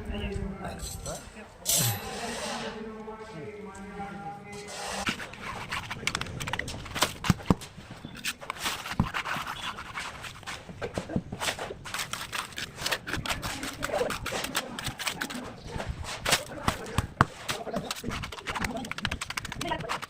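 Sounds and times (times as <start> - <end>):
hand tools scraping wet mortar: 4.7 - 20.0.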